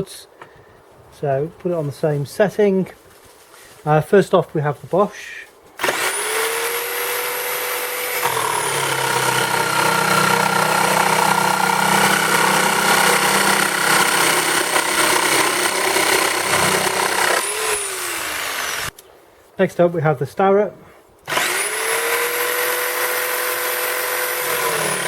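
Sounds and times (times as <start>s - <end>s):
electric jigsaw sawing wood: 5.8s - 18.9s, 21.3s - 25.0s.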